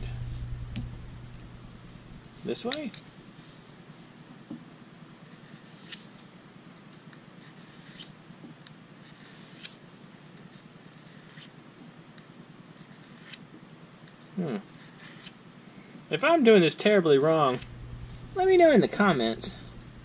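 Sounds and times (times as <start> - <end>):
knife scraping on sharpening stone: 5.3 - 6.0, 7.4 - 8.1, 9.2 - 9.8, 10.8 - 11.5, 12.8 - 13.4, 14.7 - 15.3.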